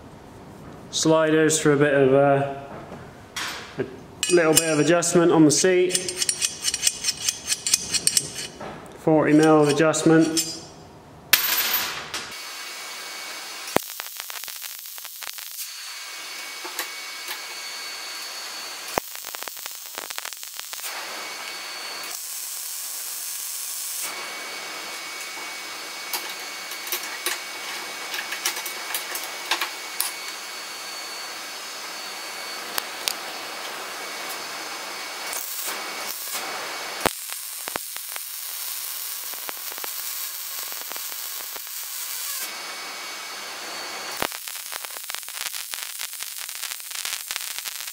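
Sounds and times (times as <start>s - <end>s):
arc welding crackling hiss: 12.3s - 47.9s.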